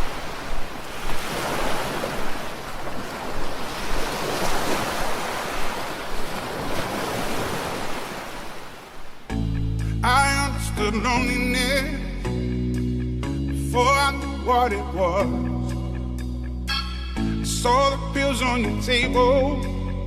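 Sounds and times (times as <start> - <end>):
ocean waves washing in: 0.0 - 9.4
wind: 0.0 - 20.0.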